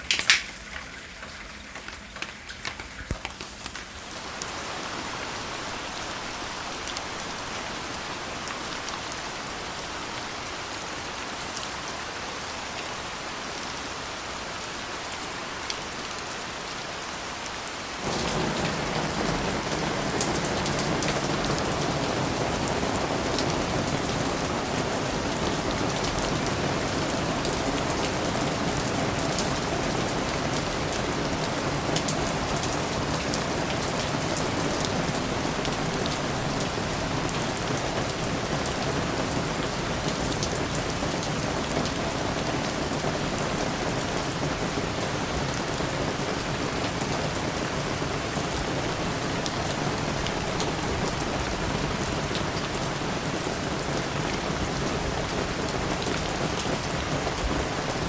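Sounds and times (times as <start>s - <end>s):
raindrop ticks: 0.0s - 4.6s
soft rain hiss: 0.0s - 58.0s.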